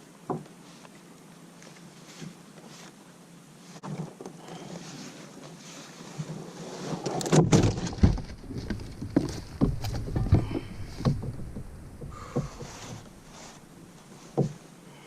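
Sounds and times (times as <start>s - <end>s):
low uneven rumble: 4.4s - 15.0s
knocks on a kayak: 7.4s - 13.1s.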